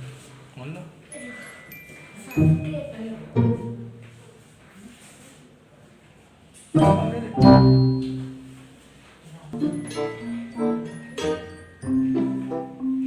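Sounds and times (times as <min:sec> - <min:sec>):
background music: 0:06.8 - 0:08.4, 0:09.6 - 0:13.0
loud ringing chords: 0:06.8 - 0:08.4.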